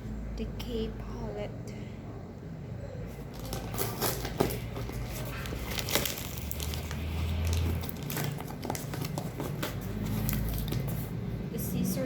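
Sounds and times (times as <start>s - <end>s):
plastic packaging crinkling: 3.2s - 11.1s.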